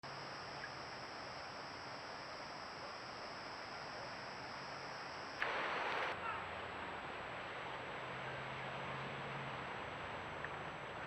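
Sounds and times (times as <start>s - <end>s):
steady electronic hiss: 0.0s - 6.2s
thin high whine: 0.0s - 6.2s.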